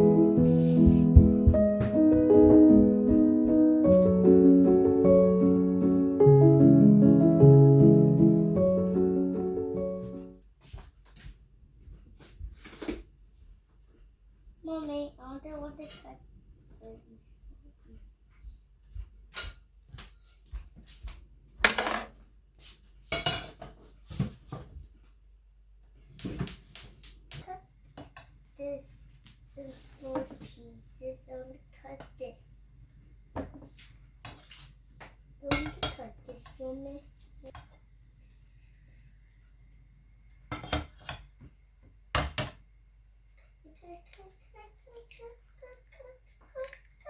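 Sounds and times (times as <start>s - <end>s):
cutlery clinking and scraping plate: 23.1s - 23.8s, 40.5s - 41.3s.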